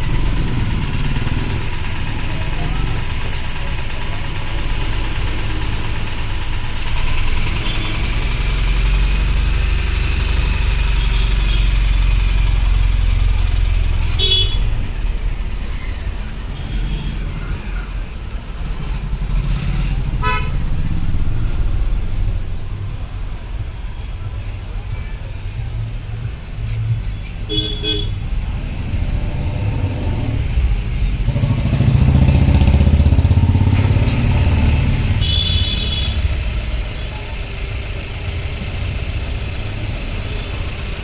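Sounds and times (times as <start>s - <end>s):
vehicle engine rumble: 0.0s - 41.0s
car horn tooting: 14.1s - 14.6s, 20.2s - 20.5s, 27.5s - 28.2s, 35.2s - 36.3s.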